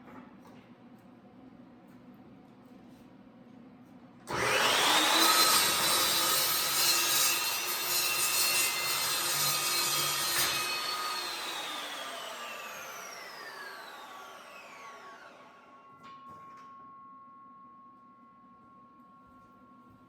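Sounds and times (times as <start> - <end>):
power tool cutting sheet metal: 4.3 - 15.9.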